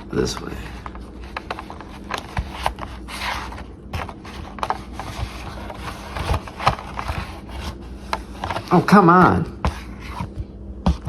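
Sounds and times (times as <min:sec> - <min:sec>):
scraping and rustling of pouch: 0:00.2 - 0:08.9.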